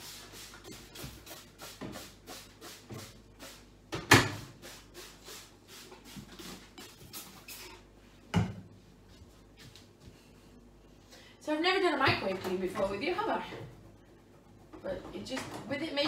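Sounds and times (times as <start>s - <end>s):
cloth wiping and scrubbing: 0.0s - 3.7s, 4.6s - 7.8s.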